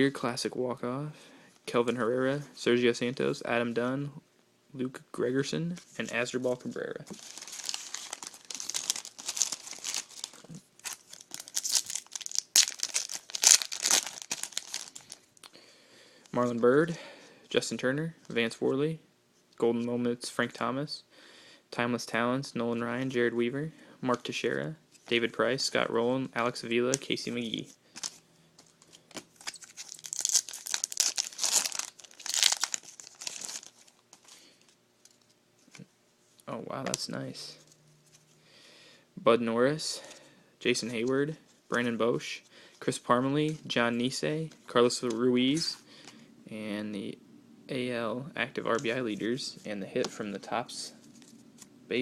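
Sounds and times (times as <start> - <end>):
wrapper being torn and crinkled: 7.2 - 15.4, 29.4 - 34.4.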